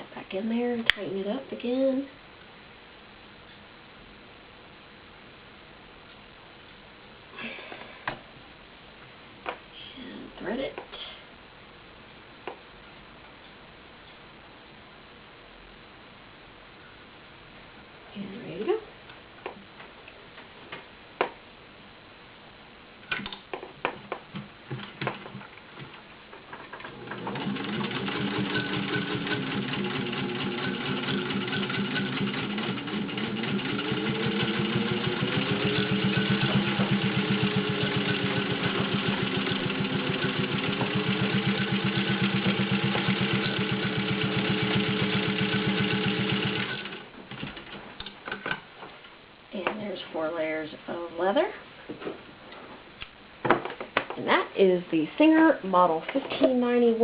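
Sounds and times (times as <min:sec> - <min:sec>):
sewing machine stitching: 0:26.8 - 0:47.7.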